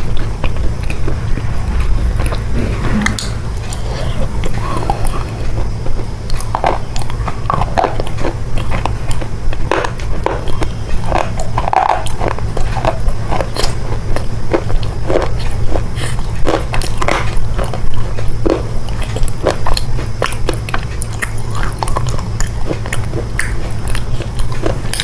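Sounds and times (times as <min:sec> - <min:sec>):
steady low hum: 0:00.0 - 0:25.0
chocolate being bitten and chewed: 0:05.6 - 0:25.0.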